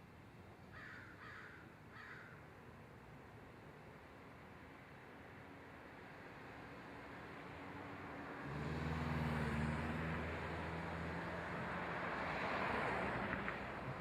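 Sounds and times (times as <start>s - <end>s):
vehicle approaching: 7.2s - 14.0s.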